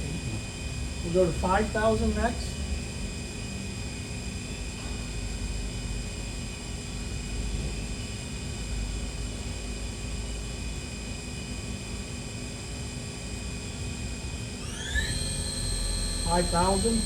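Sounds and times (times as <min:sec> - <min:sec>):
machine spindle whining: 0:14.6 - 0:17.0.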